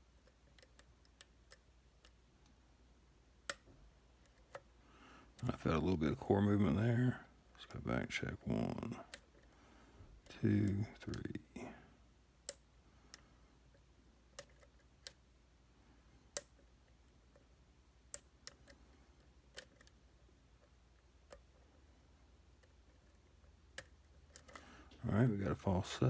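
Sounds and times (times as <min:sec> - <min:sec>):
lock pick clicking: 0:14.4 - 0:15.2, 0:23.7 - 0:24.7.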